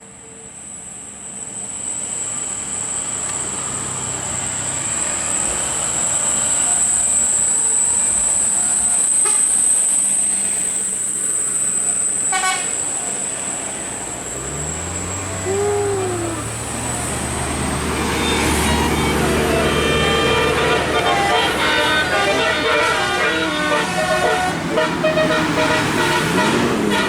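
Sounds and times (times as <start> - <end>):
large vehicle passing by: 10.4 - 27.0
brief horn toot: 12.3 - 12.8, 15.4 - 27.0.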